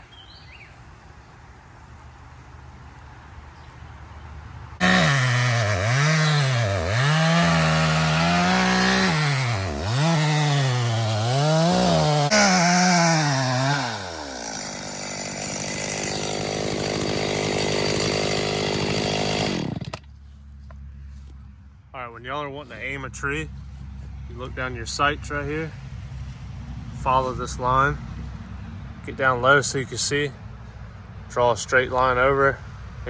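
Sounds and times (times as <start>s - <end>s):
chainsaw running hard: 4.8s - 20.1s.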